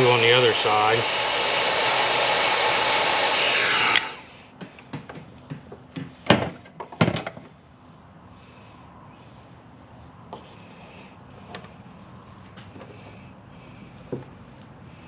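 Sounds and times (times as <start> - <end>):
heat gun blowing: 0.0 - 5.0.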